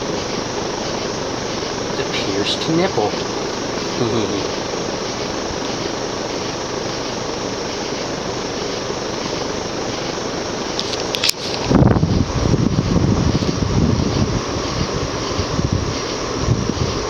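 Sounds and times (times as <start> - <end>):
ceiling fan air rush: 0.0 - 17.0
sharp clicks: 10.7 - 11.8.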